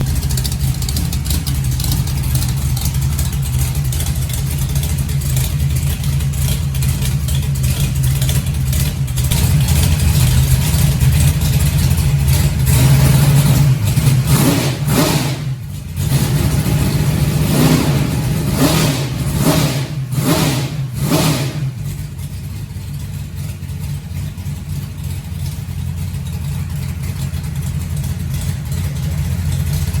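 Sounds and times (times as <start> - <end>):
car engine idling and revving: 0.0 - 30.0.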